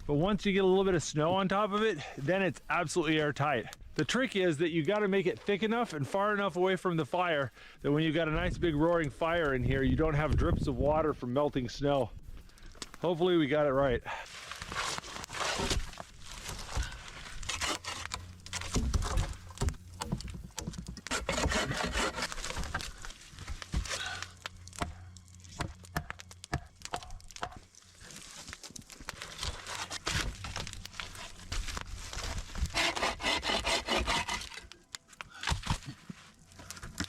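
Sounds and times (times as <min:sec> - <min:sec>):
branches rustling and scraping: 0:11.8 - 0:37.0.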